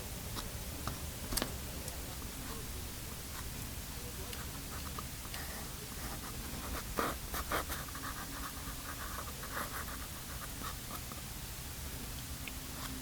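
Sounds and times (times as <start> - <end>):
steady low hum: 0.0 - 13.0
pastel scratching on paper: 6.0 - 11.0.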